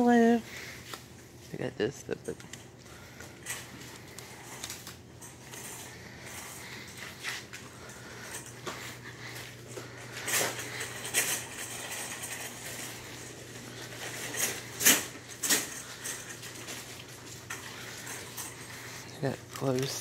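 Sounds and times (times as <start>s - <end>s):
steady low hum: 0.0s - 20.0s
small items clicking and rattling: 10.1s - 20.0s.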